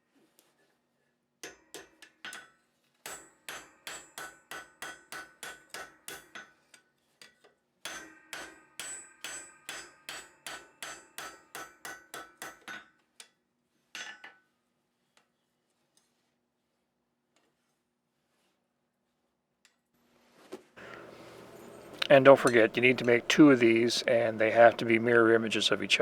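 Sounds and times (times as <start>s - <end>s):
hammer striking iron on anvil: 3.1s - 6.5s, 7.9s - 12.8s.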